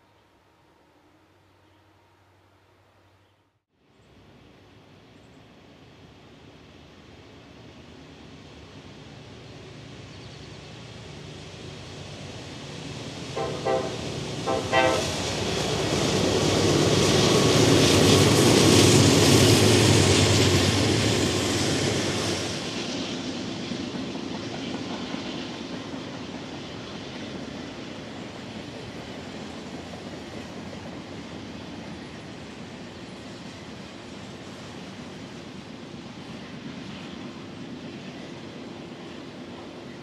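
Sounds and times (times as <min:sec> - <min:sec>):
train passing engines and wheels: 0:00.0 - 0:40.0
locomotive horn blasts: 0:13.4 - 0:15.1.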